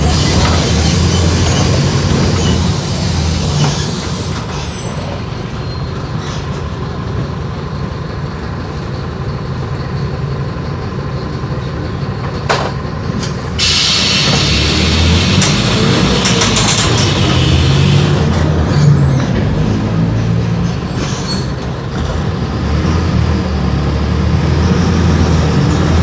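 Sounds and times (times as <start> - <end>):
loud air hiss: 0.0 - 4.4, 13.5 - 18.3
bus diesel engine rumble: 0.0 - 26.0.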